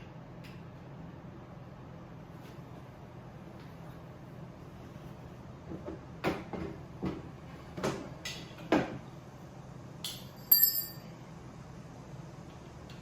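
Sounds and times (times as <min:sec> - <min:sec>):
sharp metallic clink: 0:10.1 - 0:11.1.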